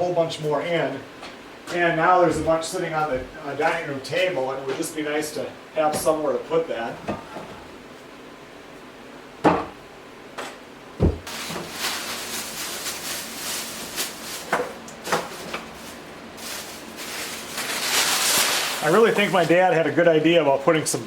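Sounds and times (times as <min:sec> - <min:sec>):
rustling: 0:11.3 - 0:19.6.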